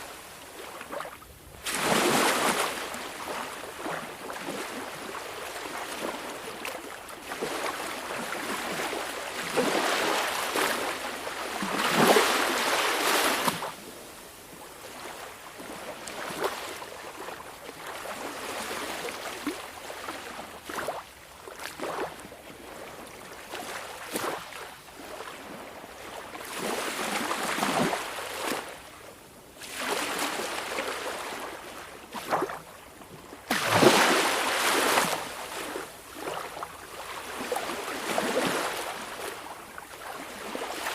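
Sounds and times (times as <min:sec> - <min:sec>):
water splashes: 0:00.0 - 0:13.8, 0:29.6 - 0:32.7, 0:33.4 - 0:40.9
small waves washing on shore: 0:00.0 - 0:40.9.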